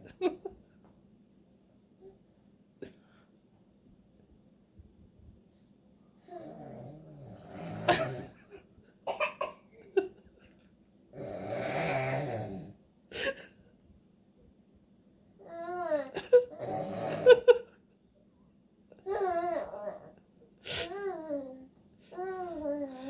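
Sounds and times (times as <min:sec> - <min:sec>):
baby and adult growling: 0:06.2 - 0:08.6, 0:11.1 - 0:12.8, 0:15.4 - 0:17.6, 0:19.0 - 0:23.0
high-pitched baby vocalisation: 0:19.1 - 0:20.1.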